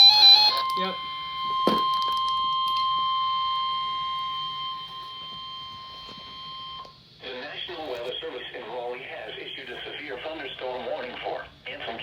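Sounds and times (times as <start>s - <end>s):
radio alarm tone: 0.0s - 8.4s.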